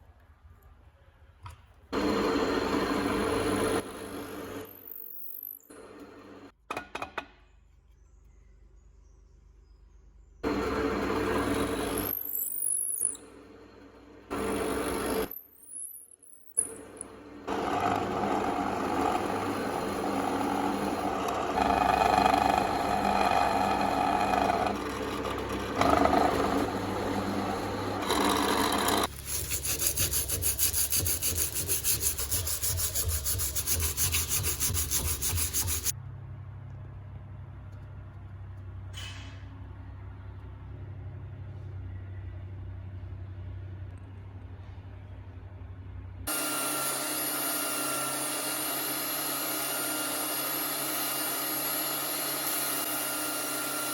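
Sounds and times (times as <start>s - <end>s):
woodworking machine rubbing: 2.0s - 4.8s, 10.4s - 12.3s, 14.3s - 15.3s, 16.6s - 35.9s, 46.3s - 53.9s.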